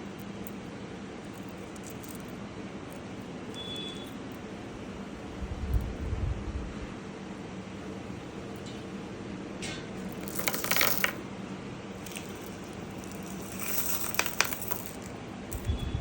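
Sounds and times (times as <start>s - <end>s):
steady low hum: 0.0s - 16.0s
gemstones clicking together: 10.2s - 11.2s, 12.0s - 15.7s.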